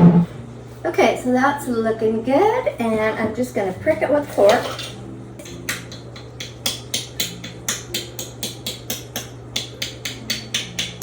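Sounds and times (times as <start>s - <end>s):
fork tapping pie plate: 5.4s - 11.0s.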